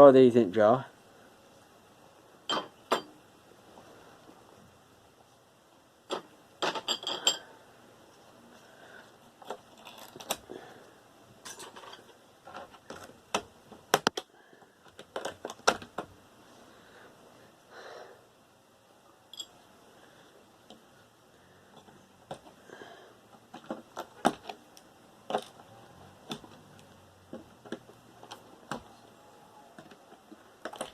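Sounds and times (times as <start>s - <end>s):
metal parts clinking into a jar: 19.3s - 19.6s.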